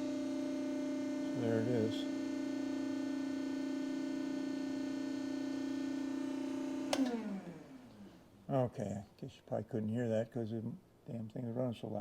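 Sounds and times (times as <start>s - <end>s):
pump motor humming: 0.0s - 8.2s
switch click: 6.9s - 7.2s.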